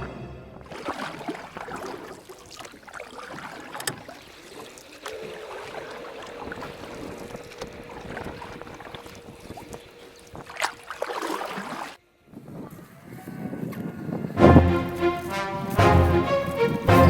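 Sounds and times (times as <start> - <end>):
wind noise on microphone: 12.3 - 15.8.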